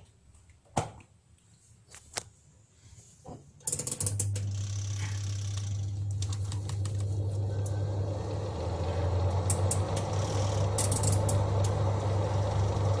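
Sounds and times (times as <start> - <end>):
spin motor humming: 6.8 - 13.0.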